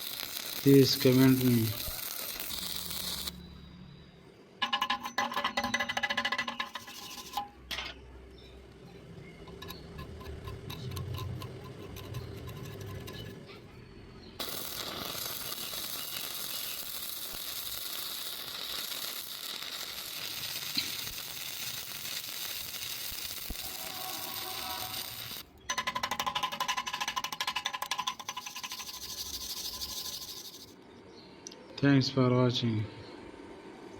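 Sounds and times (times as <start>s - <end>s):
welding arc hissing: 0.0s - 3.4s, 14.4s - 25.6s, 27.9s - 30.8s.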